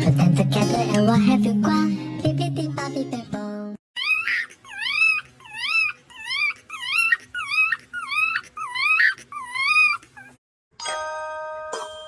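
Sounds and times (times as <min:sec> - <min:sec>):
dog whining: 0:04.0 - 0:10.4
chiming bell-like jingle: 0:10.8 - 0:12.0.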